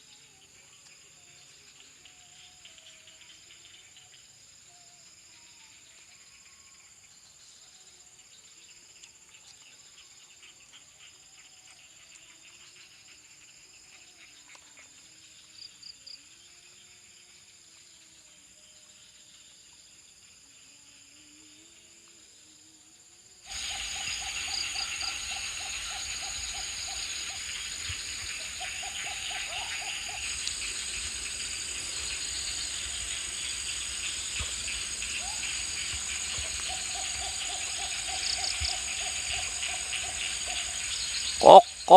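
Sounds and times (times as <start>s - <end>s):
insects chirring: 0.0s - 41.9s
pulsed animal calls: 41.4s - 41.9s.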